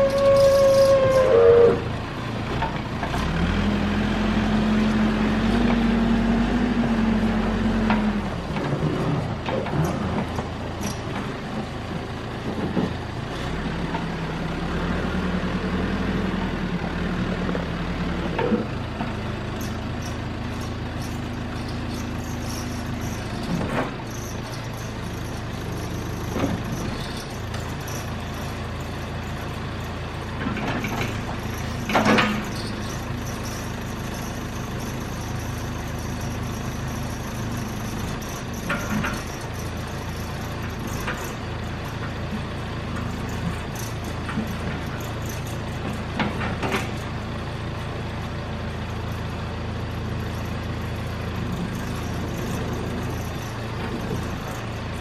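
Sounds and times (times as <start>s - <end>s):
diesel engine running: 0.0s - 55.0s.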